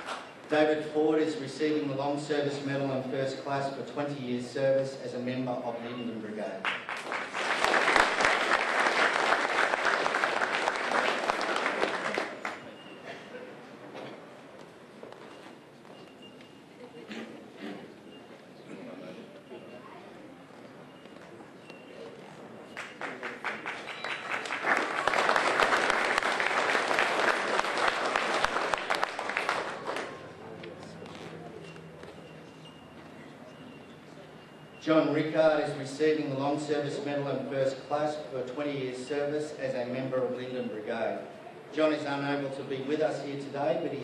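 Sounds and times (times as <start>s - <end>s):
audience applauding: 6.6s - 12.8s, 22.7s - 30.4s.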